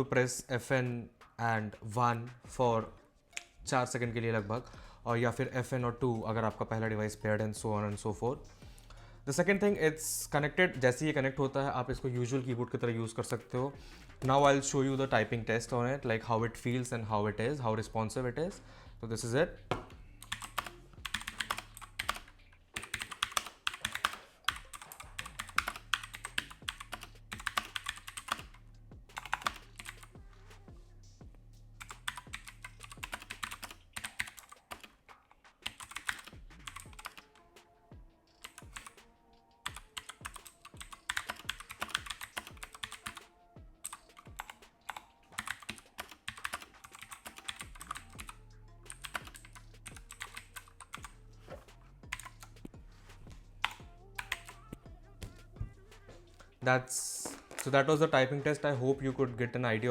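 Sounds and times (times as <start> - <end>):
typing on mechanical keyboard: 20.2 - 30.1, 31.8 - 34.9, 35.6 - 37.4, 39.6 - 43.3, 43.9 - 51.2, 53.6 - 54.6.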